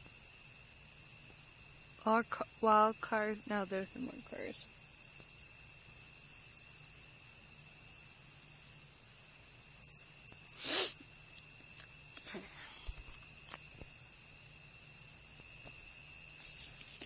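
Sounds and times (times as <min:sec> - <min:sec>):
crickets and insects trilling: 0:00.0 - 0:17.0
breathy puff of noise: 0:10.6 - 0:11.0.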